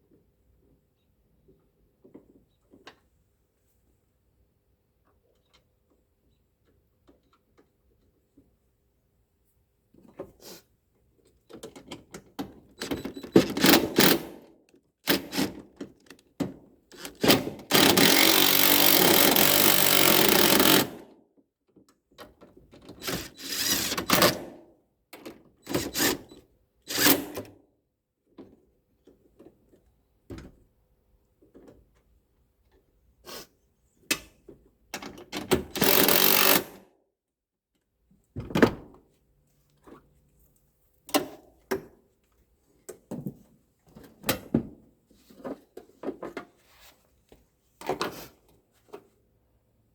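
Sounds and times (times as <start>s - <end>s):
power drill driving screws: 13.6s - 14.3s, 17.0s - 21.0s, 23.0s - 24.5s, 25.8s - 27.4s, 35.7s - 36.8s.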